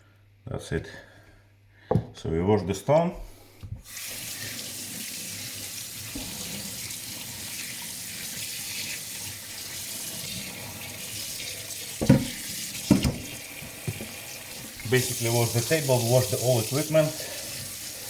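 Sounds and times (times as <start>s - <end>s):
tap water running: 3.6s - 18.0s
short knocks: 12.0s - 13.3s.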